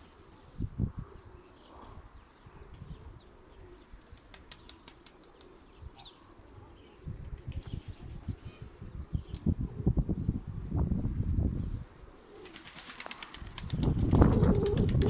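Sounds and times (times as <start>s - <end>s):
pigeon wings flapping: 4.2s - 5.6s, 12.4s - 15.0s.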